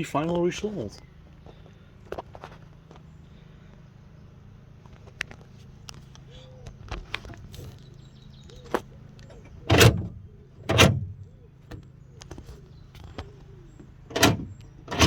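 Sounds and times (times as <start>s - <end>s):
door lock actuator clacking: 9.7s - 11.2s, 14.1s - 15.0s.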